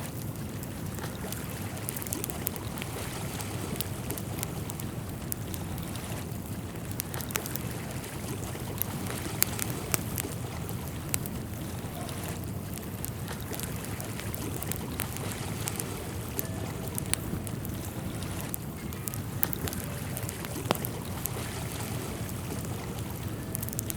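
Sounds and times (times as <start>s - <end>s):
moving water: 0.0s - 23.9s
small sharp clicks: 12.0s - 21.5s.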